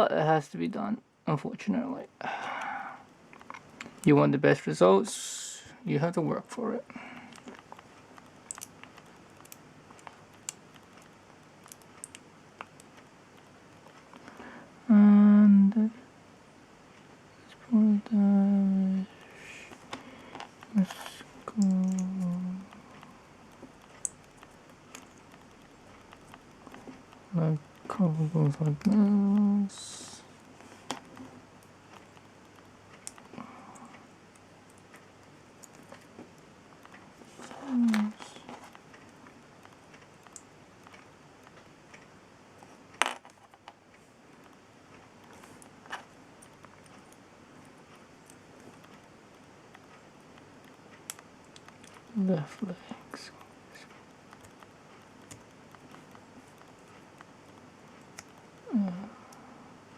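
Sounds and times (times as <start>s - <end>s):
plastic model parts clicking: 20.8s - 22.5s.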